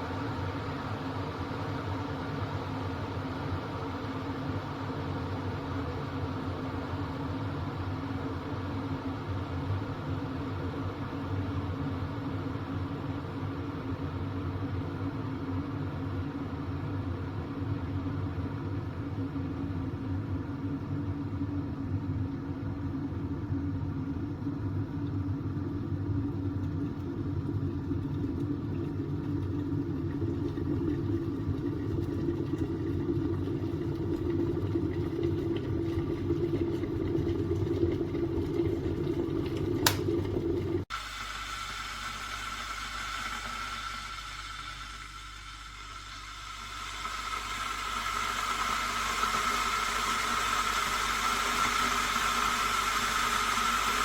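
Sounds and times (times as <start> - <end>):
kettle heating water rumble: 0.0 - 54.0
kettle switch click: 39.8 - 40.1.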